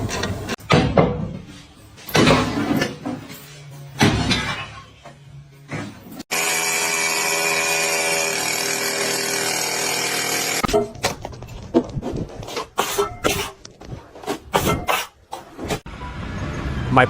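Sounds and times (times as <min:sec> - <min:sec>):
power tool motor running: 0:06.3 - 0:10.7.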